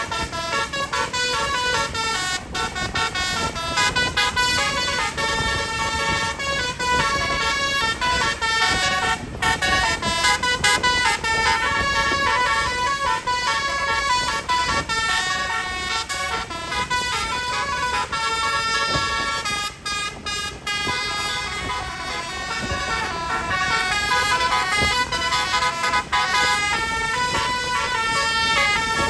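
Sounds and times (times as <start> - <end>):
musical bus air horn melody: 0.0 - 29.0.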